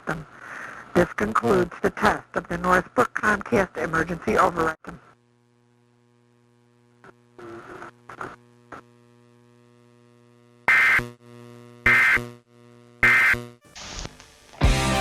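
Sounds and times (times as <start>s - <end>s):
mains hum: 0.0s - 15.0s
digital alert data bursts: 13.0s - 13.5s.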